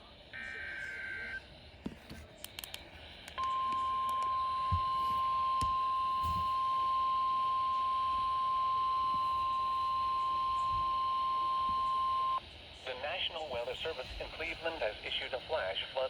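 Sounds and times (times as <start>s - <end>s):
steady alarm tone: 3.4s - 12.4s.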